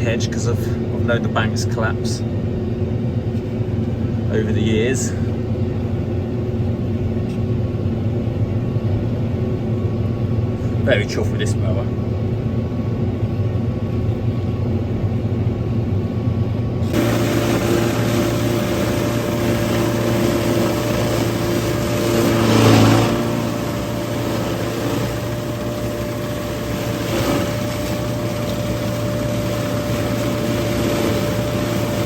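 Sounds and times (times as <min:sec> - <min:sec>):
tractor and flail mower running: 0:16.8 - 0:32.0.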